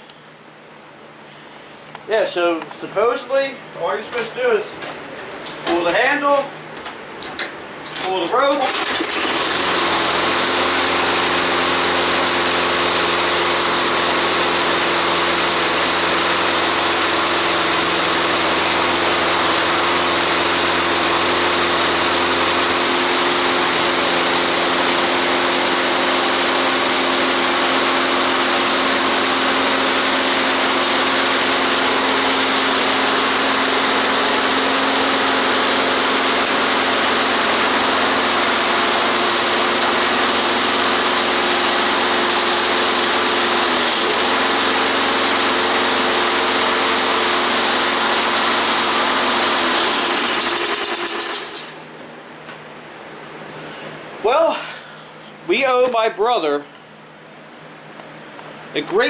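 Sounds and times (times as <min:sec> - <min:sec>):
lawn mower engine running: 0:07.2 - 0:52.6.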